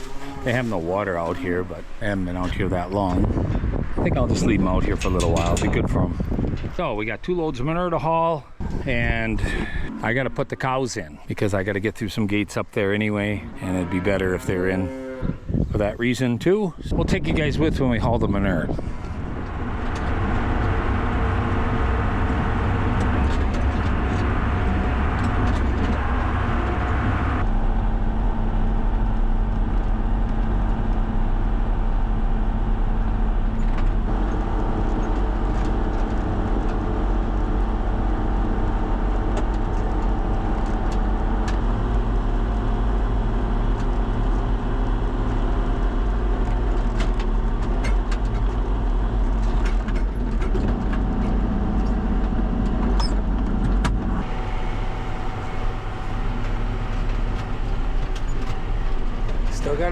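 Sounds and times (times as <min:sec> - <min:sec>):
tractor engine running: 0:17.2 - 0:59.9.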